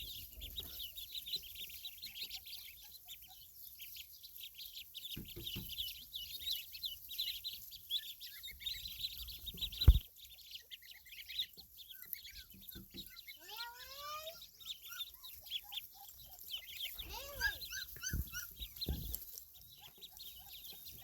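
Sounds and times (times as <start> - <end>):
ducklings peeping: 0.0 - 21.0.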